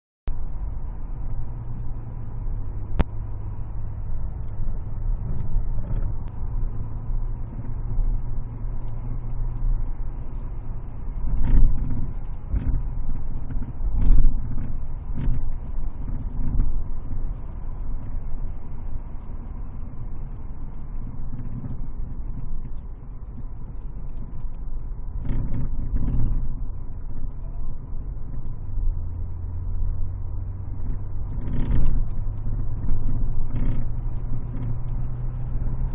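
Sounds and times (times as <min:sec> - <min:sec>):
vehicle rumble: 0:00.3 - 0:35.9.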